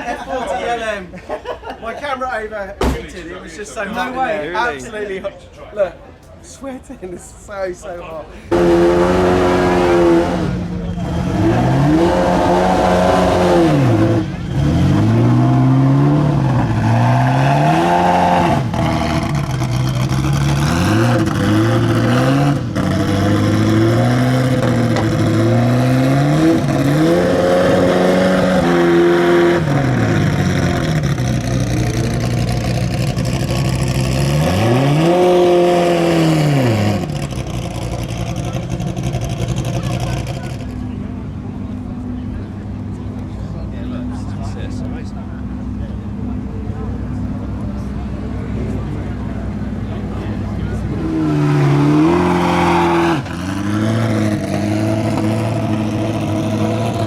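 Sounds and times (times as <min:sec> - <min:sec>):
car engine revving and accelerating: 0:08.5 - 0:40.9, 0:47.5 - 0:57.0.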